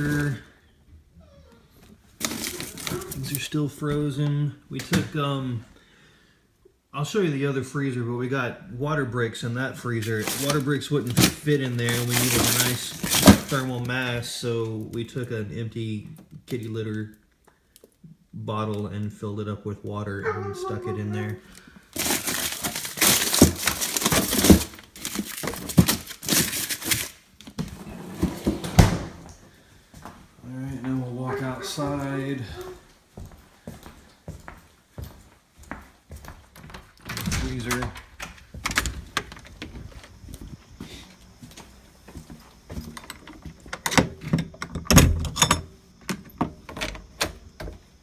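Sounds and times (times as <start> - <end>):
plastic packaging crinkling: 2.2 - 3.4, 9.9 - 14.0, 21.4 - 27.5
objects knocking and clunking: 10.1 - 13.8, 21.9 - 29.3, 36.6 - 40.6, 42.6 - 48.0.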